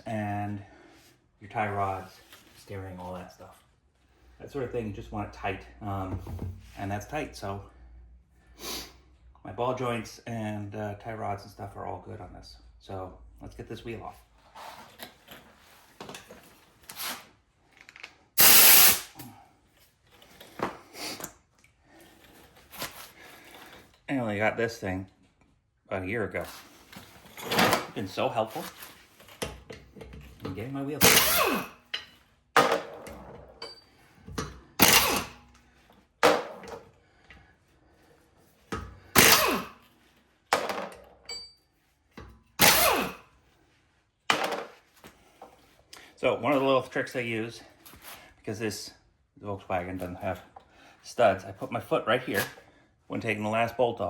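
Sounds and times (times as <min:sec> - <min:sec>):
impact wrench burst: 0:18.4 - 0:19.2, 0:31.0 - 0:31.8, 0:34.8 - 0:35.4, 0:39.2 - 0:39.8, 0:42.6 - 0:43.2.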